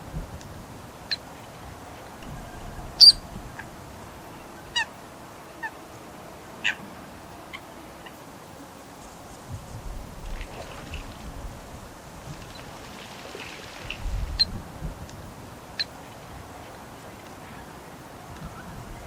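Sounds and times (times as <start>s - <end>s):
coot calling: 2.4s - 3.7s.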